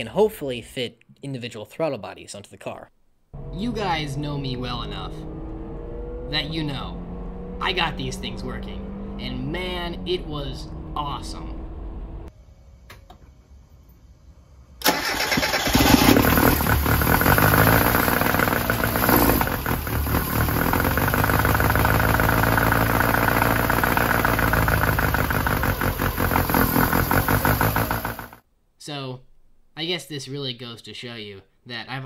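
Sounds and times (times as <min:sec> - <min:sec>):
car engine starting and running: 0:03.4 - 0:12.3, 0:14.8 - 0:28.4.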